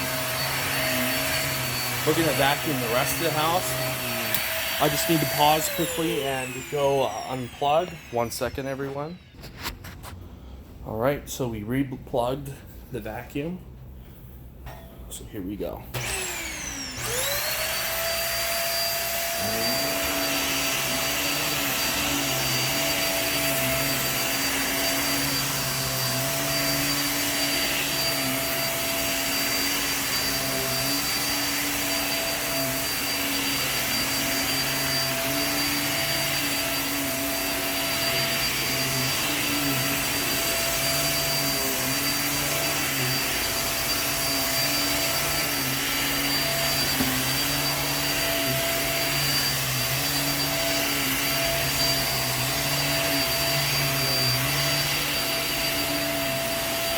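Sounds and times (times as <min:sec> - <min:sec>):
vacuum motor high whine: 0:00.0 - 0:09.7, 0:16.0 - 0:56.9.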